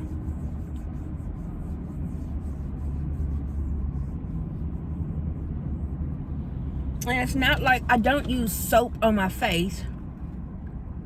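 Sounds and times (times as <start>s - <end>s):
low vehicle rumble: 0.0s - 11.0s.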